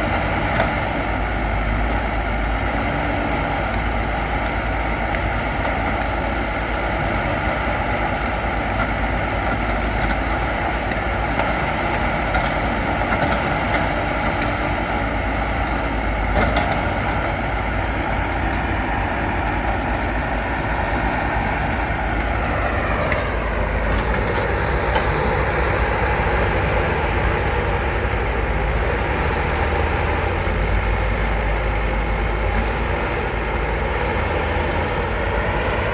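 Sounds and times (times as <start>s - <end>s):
heavy diesel engine running: 0.0s - 35.9s.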